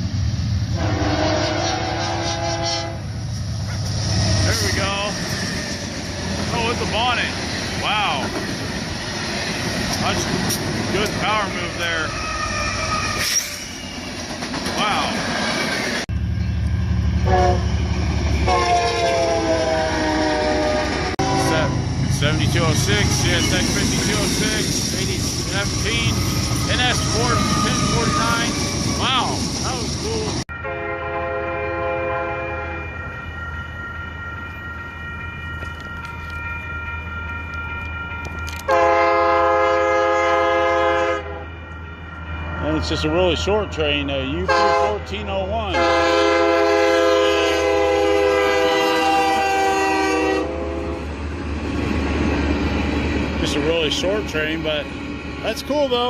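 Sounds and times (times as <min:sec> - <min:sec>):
train rumbling past: 0:00.0 - 0:56.0
train horn blasts: 0:00.7 - 0:03.2, 0:17.2 - 0:21.9, 0:30.5 - 0:33.0, 0:38.6 - 0:41.6, 0:44.4 - 0:45.1, 0:45.7 - 0:51.0
locomotive engine throbbing: 0:01.8 - 0:30.4.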